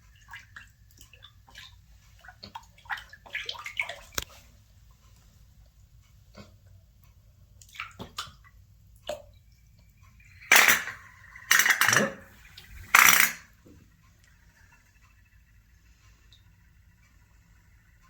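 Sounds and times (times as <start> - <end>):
splashing clatter of metal pieces: 10.4 - 12.2, 12.9 - 13.4.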